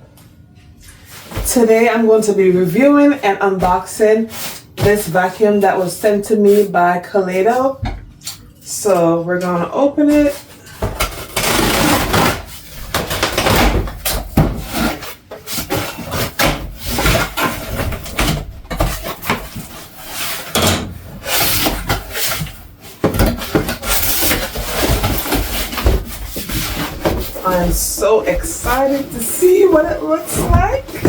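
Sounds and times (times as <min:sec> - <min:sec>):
cardboard scraping and rustling: 0:10.1 - 0:31.0.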